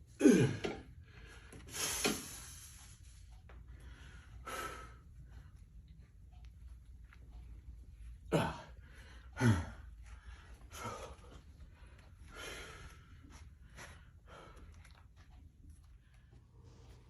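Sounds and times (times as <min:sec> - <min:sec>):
man breathing hard: 0:00.1 - 0:05.8, 0:08.2 - 0:15.1.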